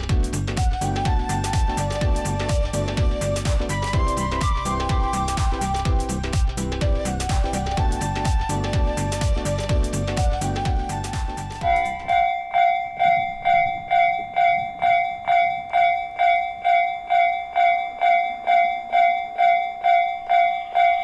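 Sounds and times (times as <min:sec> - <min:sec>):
music: 0:00.0 - 0:12.2
level-crossing warning bell: 0:11.7 - 0:21.0.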